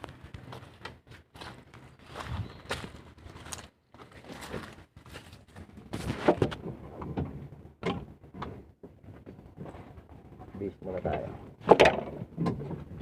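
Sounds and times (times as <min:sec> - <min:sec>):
knocks and clatters of tools: 0:11.0 - 0:13.0.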